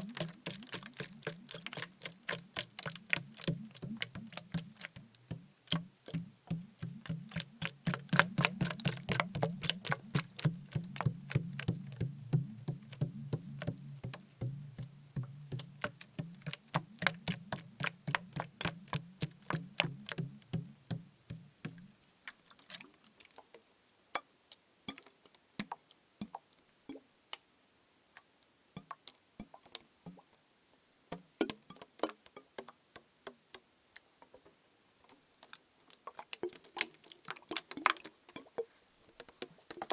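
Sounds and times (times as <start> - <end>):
fingers tapping plastic bottle: 0.0 - 21.9
low steady hum: 0.0 - 22.1.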